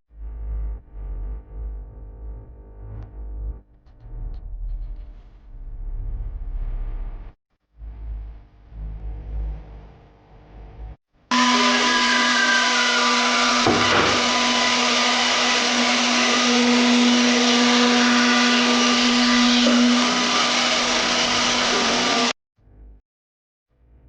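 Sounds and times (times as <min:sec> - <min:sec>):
wood router high whine: 0:11.3 - 0:22.4.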